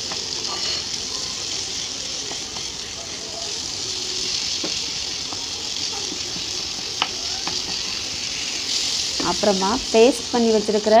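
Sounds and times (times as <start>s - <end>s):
masala sizzling in oil: 0.0s - 11.0s.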